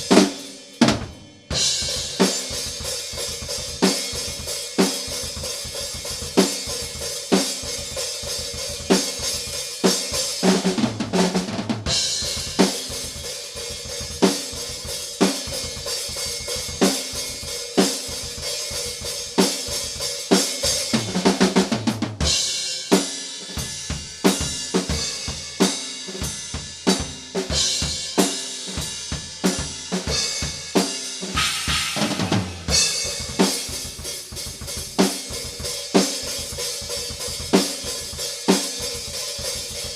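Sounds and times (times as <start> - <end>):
cymbals: 27.6 - 34.4
crash cymbal: 31.3 - 33.1
tom fill: 31.3 - 34.5
snare drum hits: 31.4 - 32.7
bass drum: 31.4 - 35.0.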